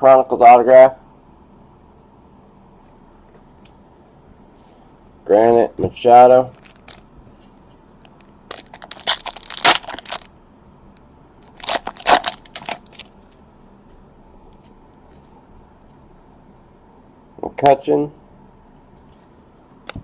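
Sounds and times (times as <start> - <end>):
card pack wrapper tearing: 6.6 - 7.0, 8.5 - 10.3, 11.5 - 13.1.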